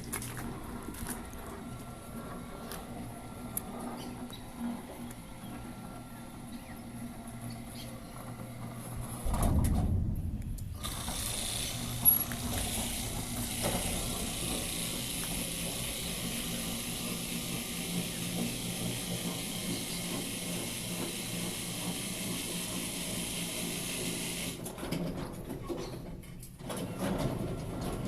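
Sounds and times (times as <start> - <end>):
fan blade noise: 0.0 - 24.8
electric fan humming: 8.1 - 23.0
loud low rumble: 9.2 - 14.5.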